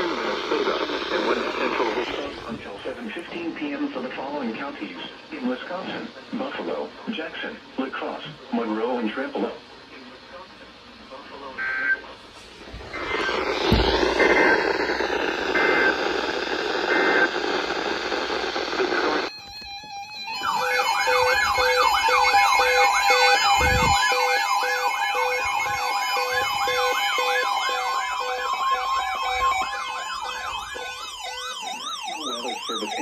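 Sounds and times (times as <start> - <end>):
hissing static: 0.0 - 19.3, 20.4 - 24.5
steady tone: 12.5 - 31.4
warbling siren-like alert tone: 12.8 - 18.6, 19.2 - 33.0.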